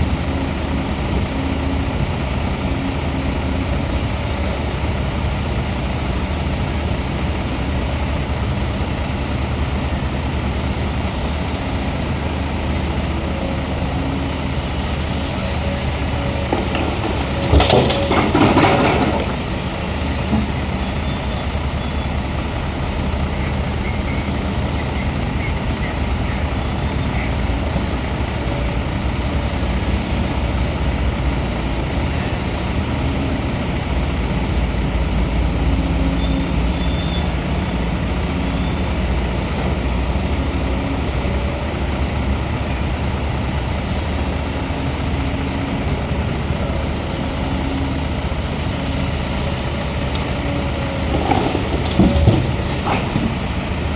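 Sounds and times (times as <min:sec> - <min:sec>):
heavy diesel engine running: 0:00.0 - 0:53.9.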